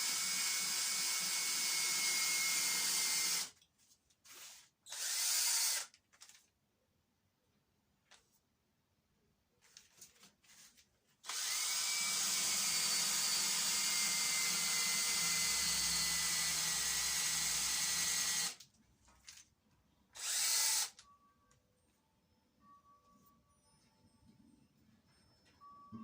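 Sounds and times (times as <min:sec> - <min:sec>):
power drill running: 0:00.0 - 0:03.5, 0:04.3 - 0:05.9, 0:11.2 - 0:18.6, 0:20.2 - 0:21.0.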